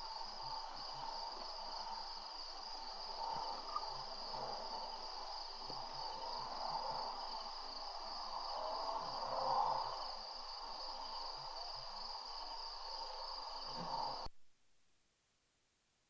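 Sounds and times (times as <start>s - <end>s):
insects trilling: 0.0s - 14.3s
faint outdoor hiss: 0.0s - 16.0s.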